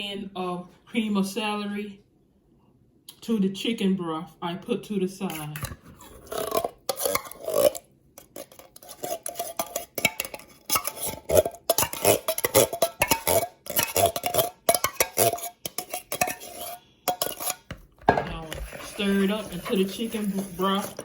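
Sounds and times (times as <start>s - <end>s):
spoon scraping and clinking container: 5.3s - 21.0s.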